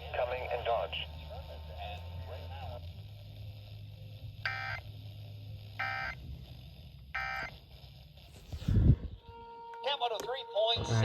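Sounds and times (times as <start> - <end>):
buzzy digital data tones: 0.0 - 8.5.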